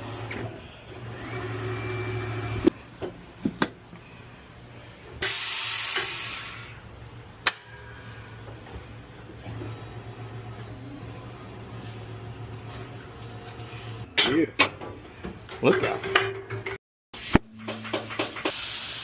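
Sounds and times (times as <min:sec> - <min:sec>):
compressed air hissing: 0:05.2 - 0:06.8, 0:18.1 - 0:19.0.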